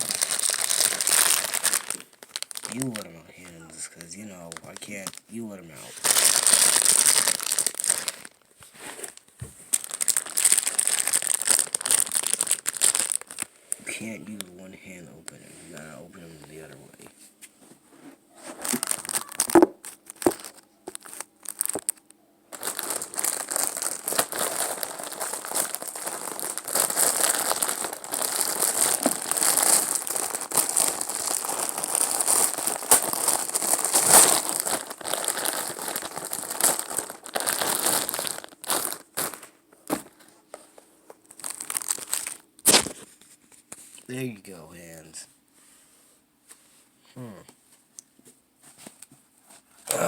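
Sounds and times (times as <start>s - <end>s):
packaging crinkling: 0.0s - 13.6s, 18.4s - 43.7s.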